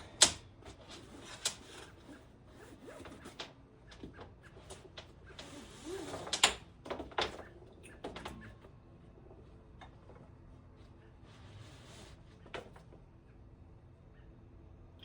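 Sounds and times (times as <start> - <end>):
sharp clicks and knocks: 0.0 - 1.8.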